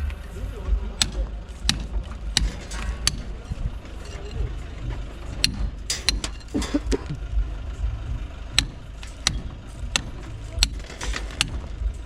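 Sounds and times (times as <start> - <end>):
steady low rumble: 0.0 - 10.6
sharp knocks: 5.4 - 7.2.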